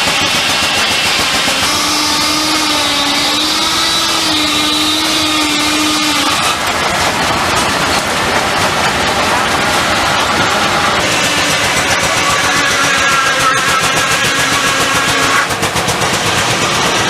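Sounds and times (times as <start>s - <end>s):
sawmill mechanical din: 0.0s - 17.0s.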